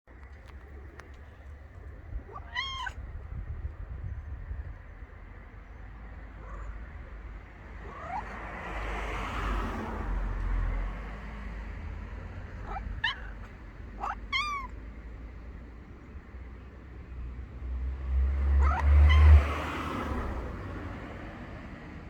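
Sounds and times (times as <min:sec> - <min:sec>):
cat meowing: 0:02.1 - 0:03.3, 0:07.8 - 0:08.4, 0:12.5 - 0:14.8, 0:18.6 - 0:19.5.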